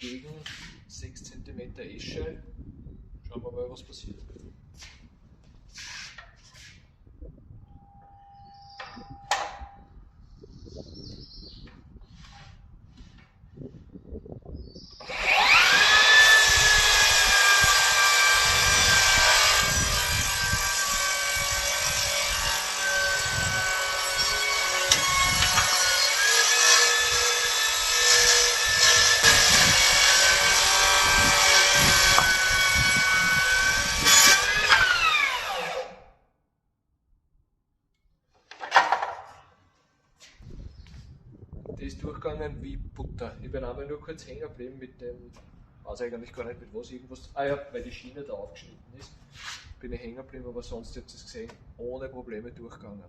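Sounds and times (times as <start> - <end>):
circular saw cutting wood: 15.0 - 36.1.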